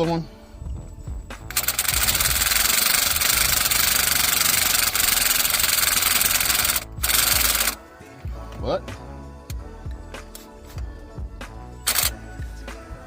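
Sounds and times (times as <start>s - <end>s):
power tool rattling: 1.5s - 7.8s, 11.9s - 12.1s.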